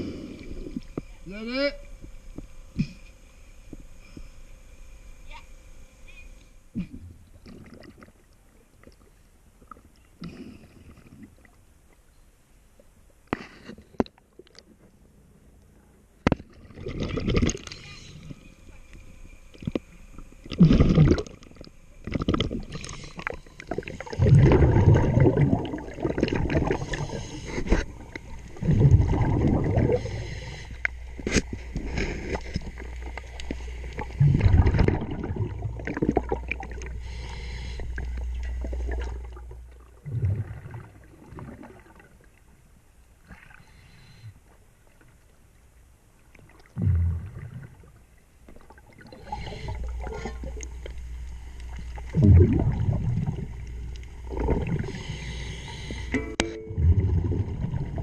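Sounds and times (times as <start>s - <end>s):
low steady hum: 0.0s - 58.0s
exhaled bubbles gurgling: 6.9s - 9.0s, 16.5s - 18.4s, 19.5s - 42.4s, 46.4s - 58.0s.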